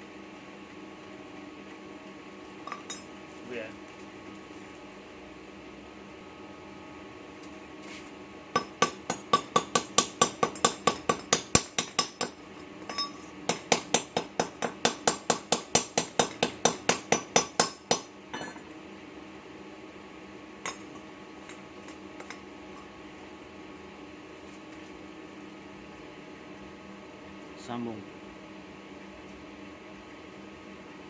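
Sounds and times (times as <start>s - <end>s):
hammer striking metal: 8.6s - 18.6s.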